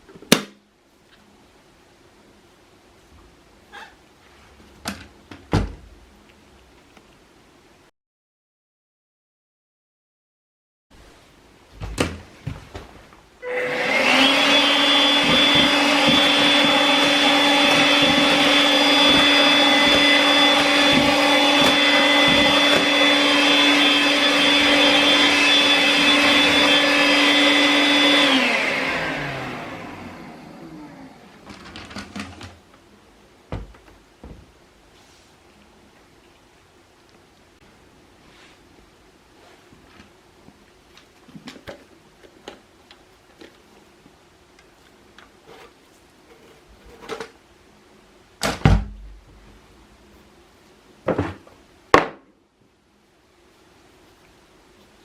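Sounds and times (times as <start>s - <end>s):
vacuum cleaner motor whine: 13.4s - 32.6s.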